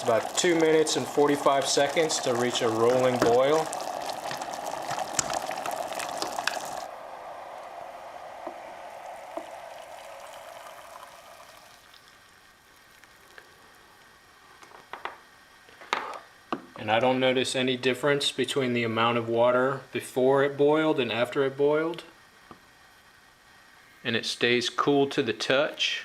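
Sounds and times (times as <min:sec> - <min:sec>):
water boiling in kettle: 0:00.0 - 0:15.0.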